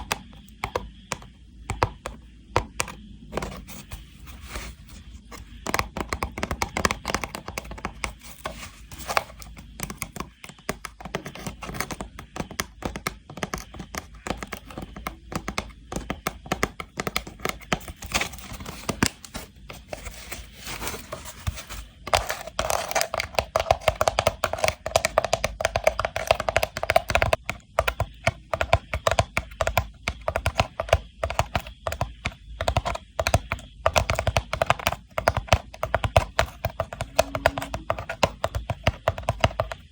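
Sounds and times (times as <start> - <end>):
rattan box tapped and scratched: 0.0 - 39.9
rubbing on rattan box: 6.7 - 10.1, 17.7 - 26.8.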